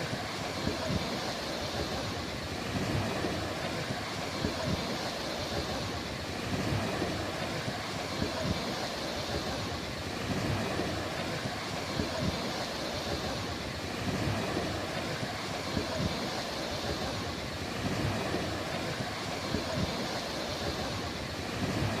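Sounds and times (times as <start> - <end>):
sea surf breaking on beach: 0.0 - 22.0.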